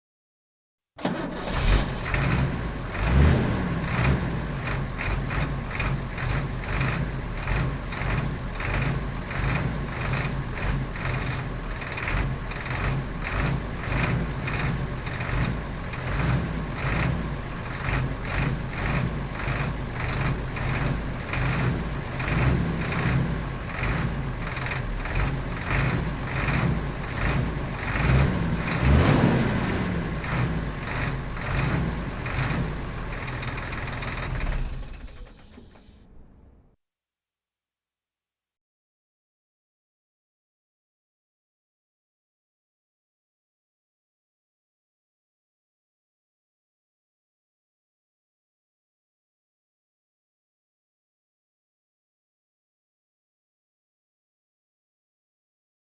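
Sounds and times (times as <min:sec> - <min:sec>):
engine revving: 0:01.0 - 0:35.5
diesel engine clattering: 0:01.0 - 0:36.2.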